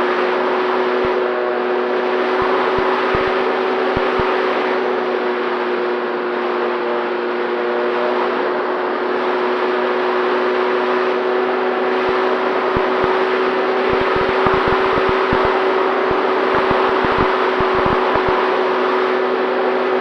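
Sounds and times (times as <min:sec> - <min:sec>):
short low crackles: 0:12.8 - 0:13.2, 0:13.9 - 0:18.4.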